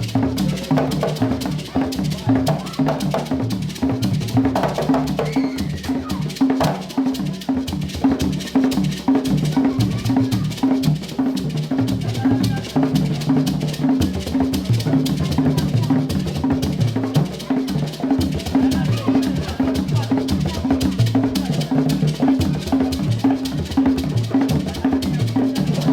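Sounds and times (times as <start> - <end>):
percussion music: 0.0 - 25.9.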